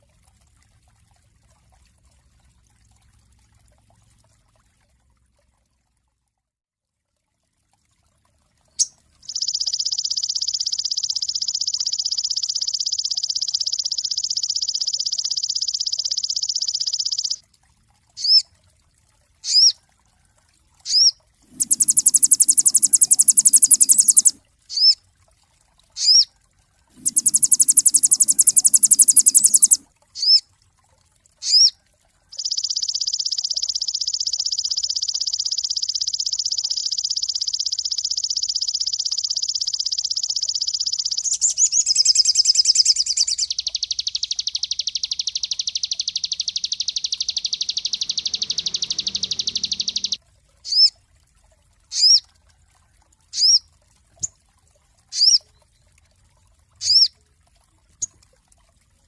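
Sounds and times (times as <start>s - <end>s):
bird chirps rising: 8.8s - 17.4s, 20.9s - 25.0s, 27.0s - 30.4s, 32.4s - 50.2s
songbird trilling: 8.8s - 17.4s, 20.9s - 25.0s, 26.0s - 26.2s, 27.0s - 30.4s, 32.4s - 50.9s.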